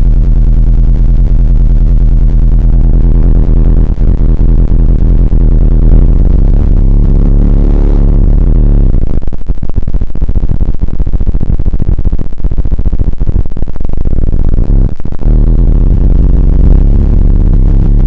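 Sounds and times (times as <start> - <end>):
deep synthesizer drone: 0.0 - 9.2, 14.5 - 18.0.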